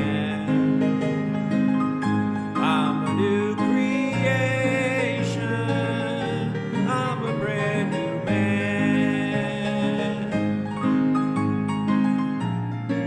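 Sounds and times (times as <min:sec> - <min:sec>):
instrumental gospel music: 0:00.0 - 0:13.0.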